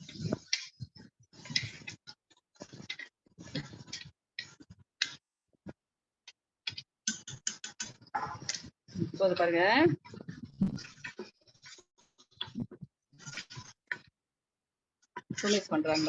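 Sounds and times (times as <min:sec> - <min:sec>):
spoon scraping in cooking pot: 0:00.0 - 0:05.2, 0:06.7 - 0:08.8, 0:10.0 - 0:14.1, 0:15.1 - 0:16.0.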